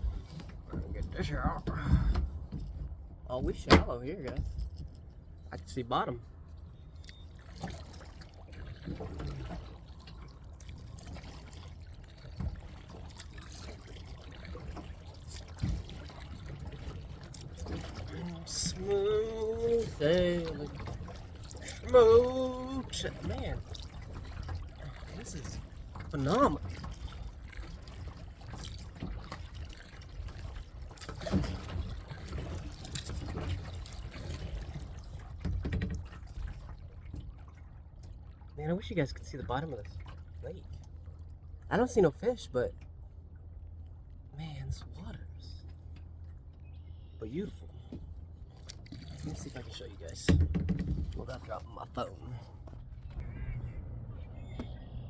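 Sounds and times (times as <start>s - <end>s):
paddle dipping and dripping water: 0.0s - 41.8s, 42.6s - 55.0s
steady low rumble: 51.1s - 55.0s.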